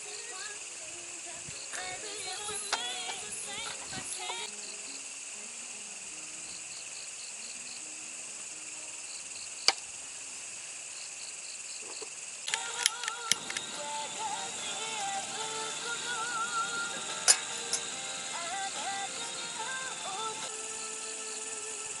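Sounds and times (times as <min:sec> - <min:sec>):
crickets chirping: 0:00.0 - 0:22.0
high insect trill: 0:00.0 - 0:22.0
sharp click: 0:11.9 - 0:13.7.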